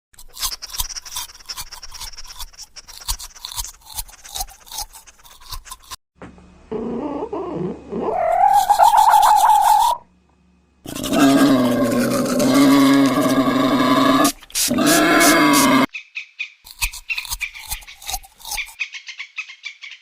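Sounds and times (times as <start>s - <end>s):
toothbrush scrubbing: 0.2s - 6.0s, 8.2s - 10.0s, 10.9s - 15.9s, 16.7s - 18.8s
animal-like vocal sound: 6.7s - 10.0s, 10.8s - 15.9s.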